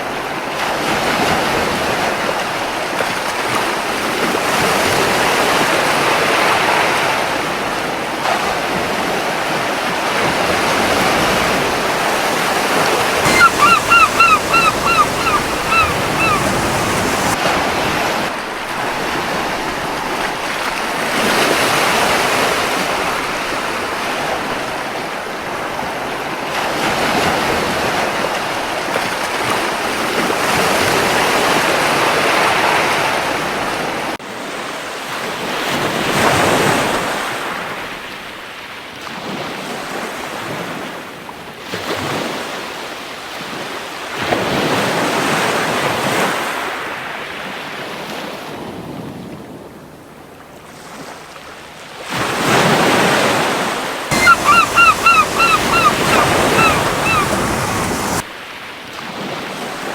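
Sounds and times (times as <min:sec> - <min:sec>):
surf washing onto beach: 0:10.7 - 0:18.1, 0:54.1 - 0:58.2
gull calling: 0:13.2 - 0:17.4, 0:54.1 - 0:58.2.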